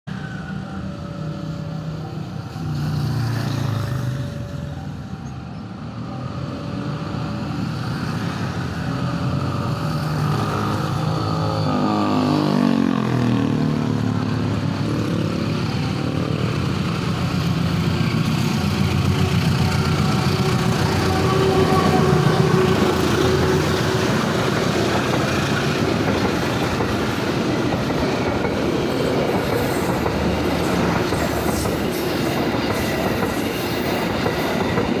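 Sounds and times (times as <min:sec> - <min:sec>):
train passing: 0:00.1 - 0:35.0.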